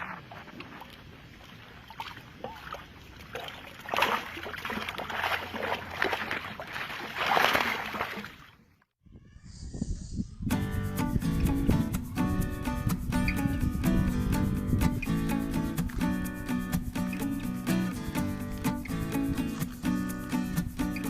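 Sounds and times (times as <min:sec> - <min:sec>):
water splashing and sloshing: 0:00.0 - 0:08.9.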